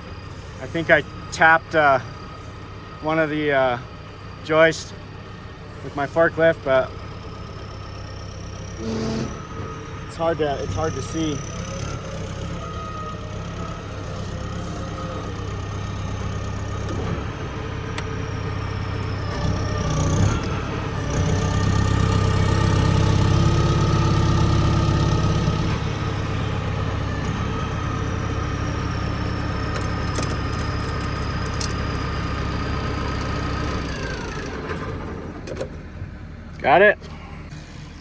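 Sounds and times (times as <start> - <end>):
forklift engine running: 0.0 - 38.0
thin high whine: 8.8 - 9.6.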